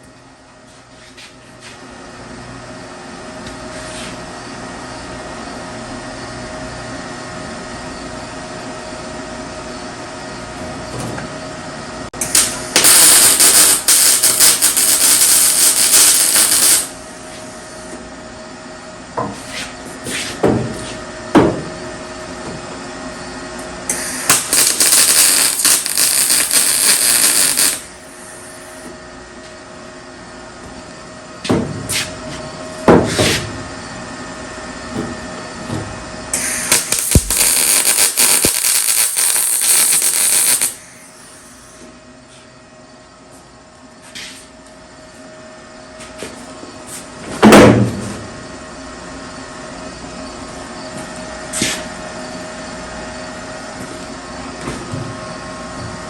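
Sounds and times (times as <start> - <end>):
steady background hum: 0.0 - 56.0
welding arc crackling: 12.2 - 17.0, 23.9 - 28.0, 36.4 - 41.0.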